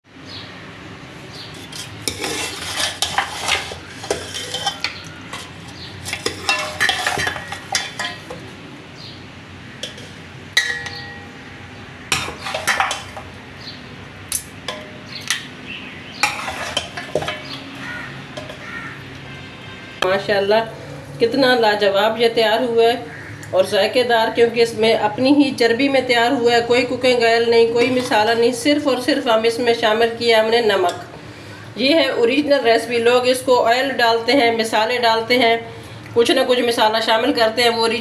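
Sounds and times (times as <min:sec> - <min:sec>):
metal spoon scraping a pot: 0:01.4 - 0:08.6, 0:09.8 - 0:11.4, 0:12.1 - 0:13.4, 0:16.2 - 0:19.0, 0:27.4 - 0:29.2.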